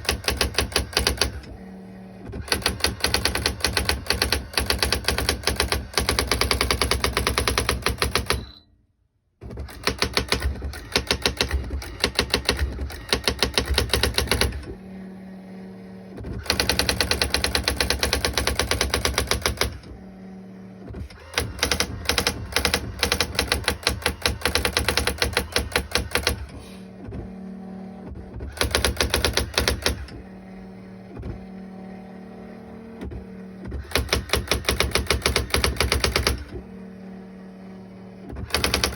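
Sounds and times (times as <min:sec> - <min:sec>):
typewriter print-hammer strikes: 0:00.0 - 0:01.6, 0:02.2 - 0:08.7, 0:09.4 - 0:14.8, 0:16.2 - 0:20.0, 0:20.9 - 0:27.3, 0:28.1 - 0:30.2, 0:33.0 - 0:36.7, 0:38.3 - 0:38.9.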